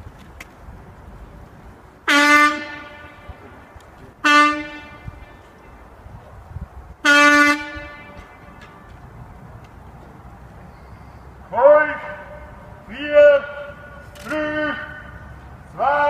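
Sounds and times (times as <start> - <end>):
signal horn blasts: 4.2 - 5.8, 7.0 - 8.8.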